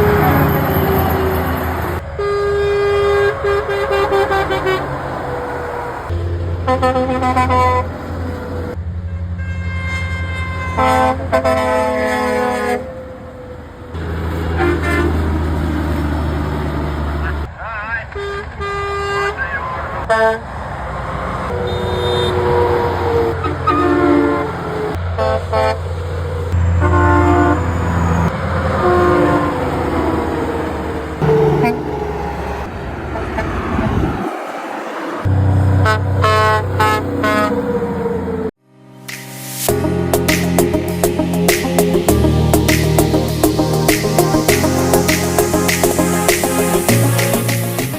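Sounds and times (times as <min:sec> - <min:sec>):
lorry air horns honking: 0:00.0 - 0:05.0, 0:06.1 - 0:13.0, 0:14.5 - 0:15.3, 0:21.5 - 0:25.9, 0:26.6 - 0:30.6, 0:31.2 - 0:33.9, 0:35.8 - 0:37.7
truck engines and motorway traffic: 0:00.0 - 0:38.6, 0:39.5 - 0:47.9.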